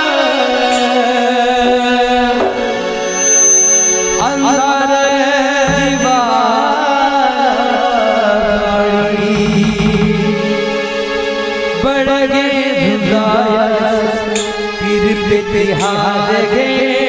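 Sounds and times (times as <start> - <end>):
man singing wordless melody: 4.2 - 11.0, 11.7 - 17.0.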